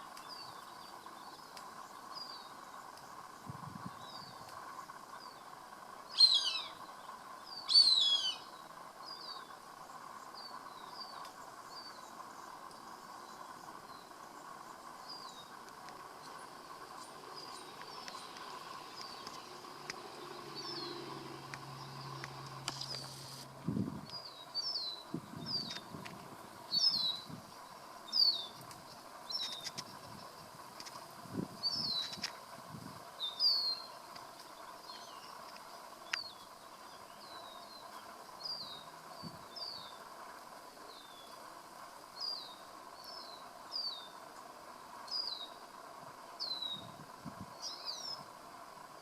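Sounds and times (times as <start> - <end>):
bird chirping: 0.0 - 23.4, 24.0 - 26.0, 26.6 - 30.4, 31.6 - 32.3, 33.2 - 40.1, 42.1 - 45.6
background hum: 0.0 - 49.0
hawk whining calls: 6.2 - 6.8, 7.7 - 8.5.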